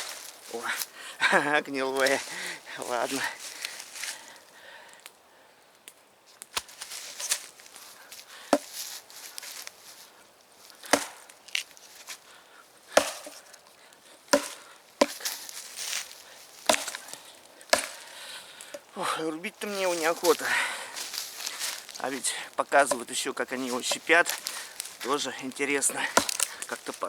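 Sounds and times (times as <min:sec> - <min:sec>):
axe chopping log: 0:00.0 - 0:00.3, 0:08.5 - 0:08.9, 0:10.8 - 0:11.7, 0:12.9 - 0:13.6, 0:14.3 - 0:18.9, 0:22.7 - 0:25.2, 0:25.8 - 0:27.0.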